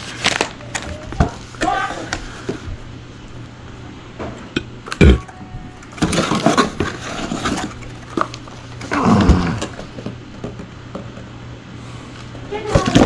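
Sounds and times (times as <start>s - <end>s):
packaging rustling and clattering: 0.0s - 1.6s, 5.8s - 10.1s.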